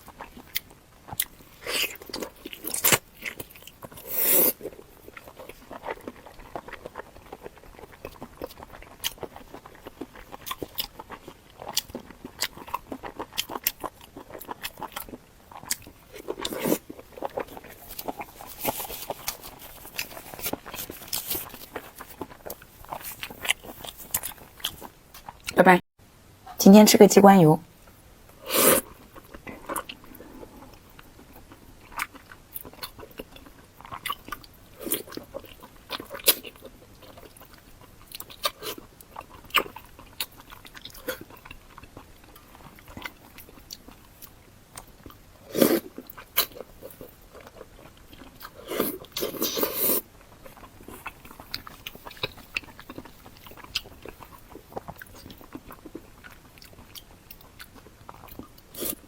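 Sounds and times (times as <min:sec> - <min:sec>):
close-miked biting and chewing: 0:00.0 - 0:25.6, 0:28.4 - 0:59.0.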